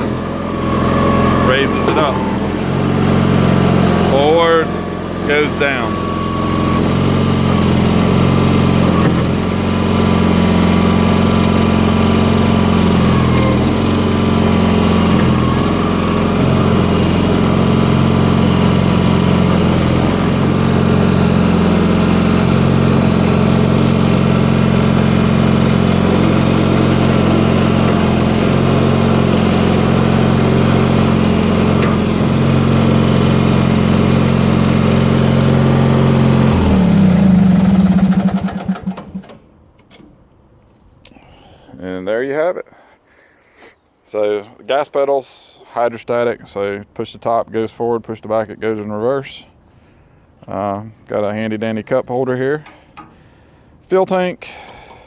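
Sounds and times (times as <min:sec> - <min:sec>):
loader engine running: 0:00.0 - 0:41.6.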